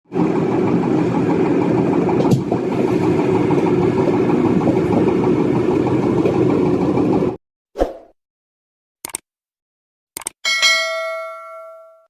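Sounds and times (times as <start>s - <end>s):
boat engine running: 0.0s - 7.4s.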